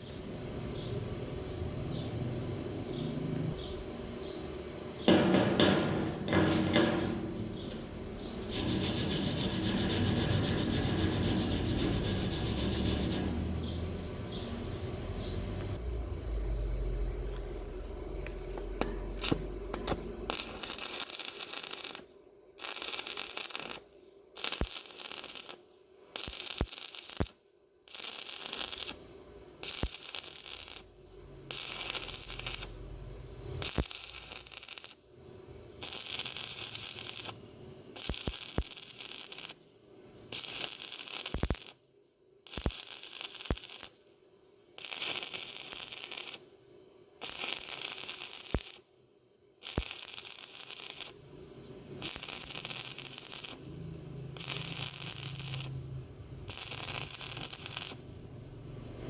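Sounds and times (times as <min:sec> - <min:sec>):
welding arc crackling: 0:05.1 - 0:13.6, 0:18.2 - 0:25.6, 0:26.2 - 0:35.0, 0:35.8 - 0:39.6, 0:40.2 - 0:41.8, 0:42.4 - 0:44.0, 0:44.8 - 0:46.5, 0:47.2 - 0:48.9, 0:49.6 - 0:51.3, 0:51.9 - 0:58.6.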